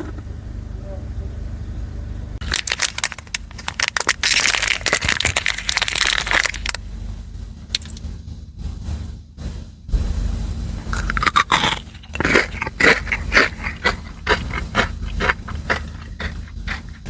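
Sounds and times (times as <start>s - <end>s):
low steady hum: 0.0s - 17.0s
hard candy being crunched: 2.4s - 6.8s, 11.0s - 17.0s.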